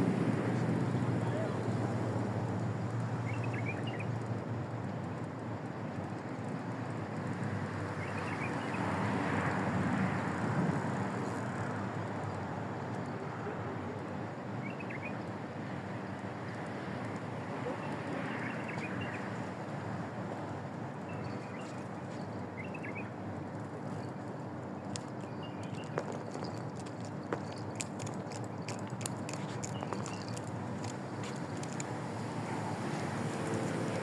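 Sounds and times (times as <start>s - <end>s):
faint voices: 1.2s - 1.9s.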